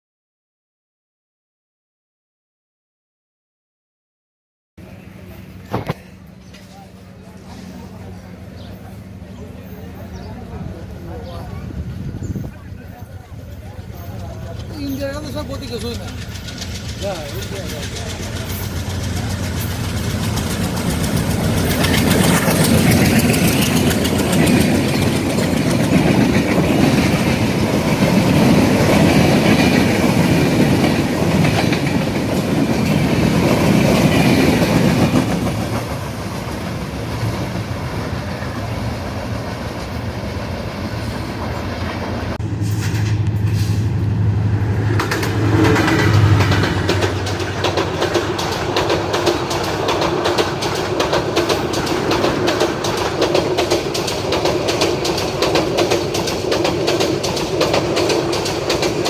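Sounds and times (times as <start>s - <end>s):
train wheels clacking: 12.8s - 59.0s.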